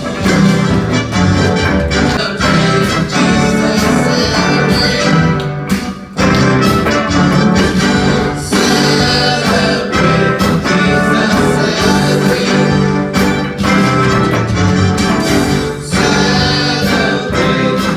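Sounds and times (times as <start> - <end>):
worship band playing: 0.0 - 17.9
person singing: 2.1 - 5.6, 6.2 - 14.1, 15.1 - 17.9.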